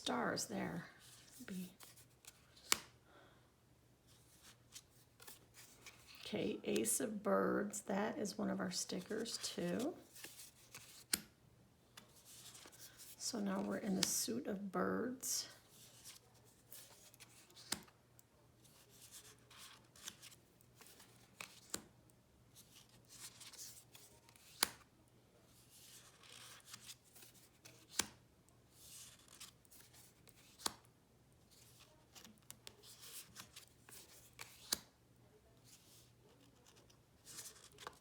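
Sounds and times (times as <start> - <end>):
cards sliding and rustling: 1.0 - 3.0, 4.1 - 6.9, 9.0 - 11.3, 11.9 - 14.2, 15.6 - 17.9, 18.6 - 21.9, 22.6 - 24.8, 25.6 - 30.9, 31.5 - 34.9, 35.6 - 38.0.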